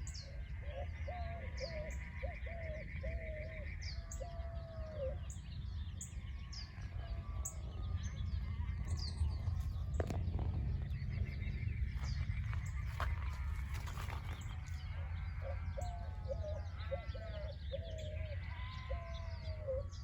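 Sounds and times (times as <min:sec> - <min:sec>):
birds chirping: 0:00.0 - 0:20.0
steady low rumble: 0:05.3 - 0:20.0.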